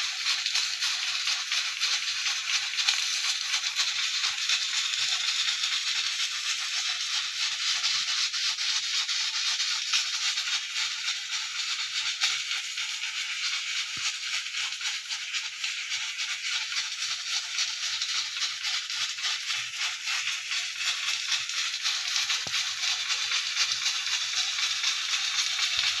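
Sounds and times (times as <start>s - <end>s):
pressure cooker steam hiss: 0.0s - 26.0s.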